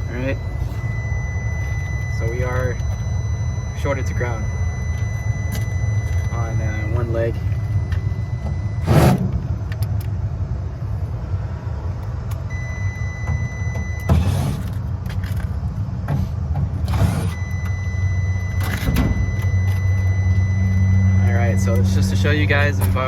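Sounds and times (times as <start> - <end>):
multimeter continuity beep: 0.0 - 9.1, 12.5 - 14.4, 17.1 - 23.0
low machinery hum: 0.0 - 23.0.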